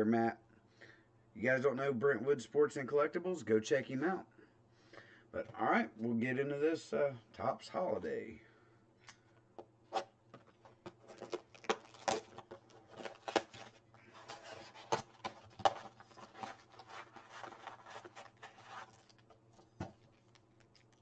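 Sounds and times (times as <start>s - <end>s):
card packs being torn open: 10.9s - 19.4s.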